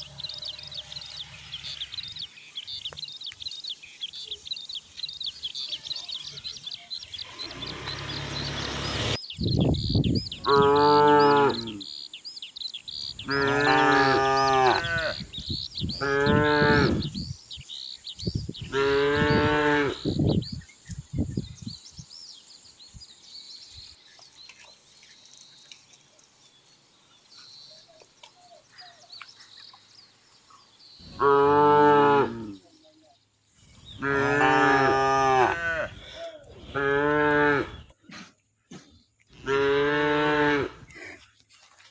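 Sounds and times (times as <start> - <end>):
cattle mooing: 13.3 - 15.2, 16.0 - 17.1, 18.8 - 20.0, 34.0 - 36.0, 39.4 - 40.8.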